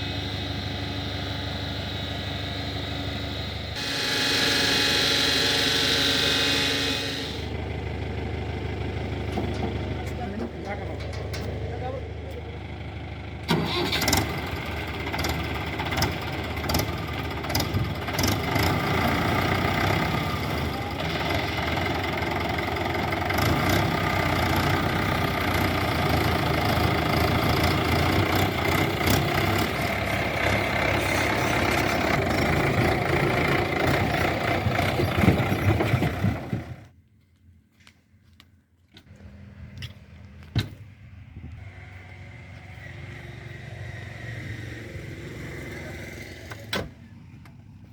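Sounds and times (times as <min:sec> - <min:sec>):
heavy diesel engine running: 0:00.0 - 0:37.0, 0:39.0 - 0:47.9
knocks and clanks: 0:09.2 - 0:11.6.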